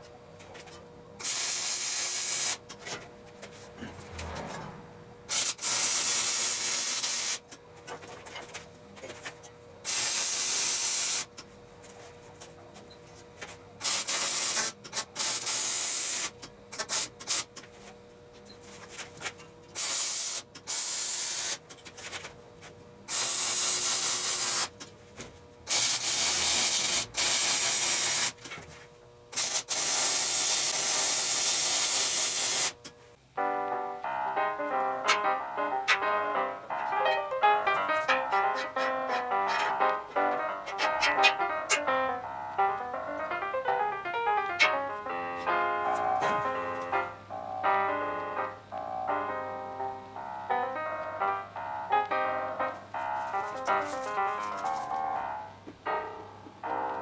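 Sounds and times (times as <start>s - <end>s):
arc welding sizzling hiss: 1.2s - 2.7s, 5.3s - 7.5s, 9.9s - 11.4s, 13.8s - 17.6s, 19.7s - 21.7s, 23.1s - 24.8s, 25.7s - 28.4s, 29.3s - 32.8s.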